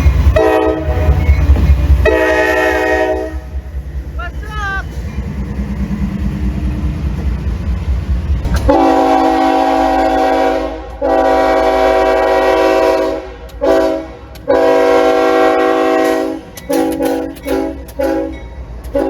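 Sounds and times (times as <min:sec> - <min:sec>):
locomotive air horn chord: 0:00.4 - 0:01.3, 0:02.0 - 0:03.6, 0:08.6 - 0:19.0
low rumble: 0:04.8 - 0:11.0.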